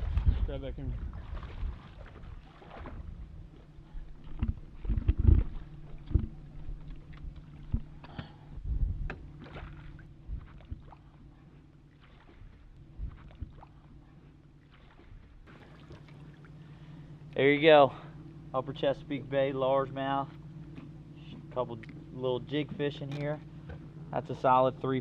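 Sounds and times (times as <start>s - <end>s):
knocks and thumps on boat: 0.0s - 16.6s, 22.5s - 24.5s
steady low hum: 0.0s - 25.0s.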